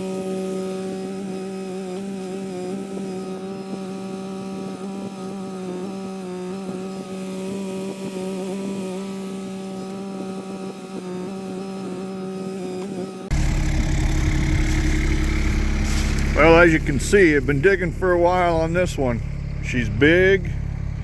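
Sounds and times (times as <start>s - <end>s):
excavator engine running: 13.3s - 21.0s.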